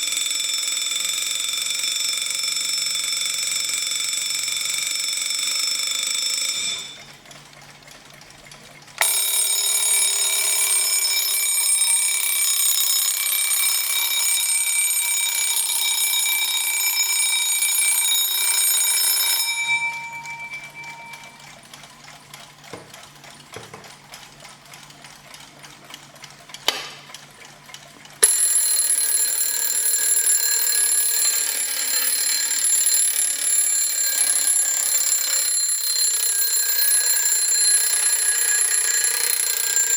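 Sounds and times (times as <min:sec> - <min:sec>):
alarm clock bells ringing: 0:00.0 - 0:07.1, 0:09.0 - 0:21.5, 0:28.2 - 0:39.9.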